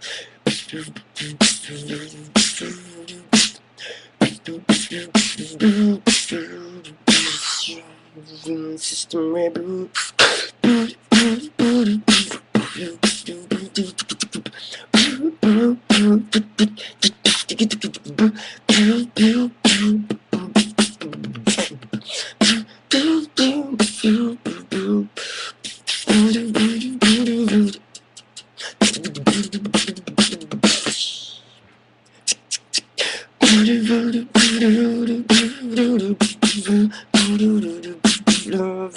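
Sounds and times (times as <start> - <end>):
hummed melody: 0.0 - 3.6, 4.2 - 25.1, 25.7 - 31.5, 33.4 - 38.9
human beatboxing: 0.0 - 38.9.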